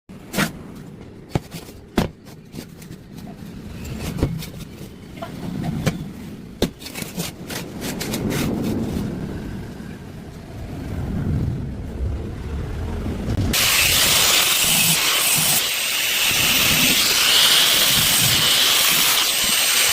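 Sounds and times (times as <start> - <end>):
low rumble: 7.6 - 13.7
angle grinder cutting steel: 13.6 - 19.9.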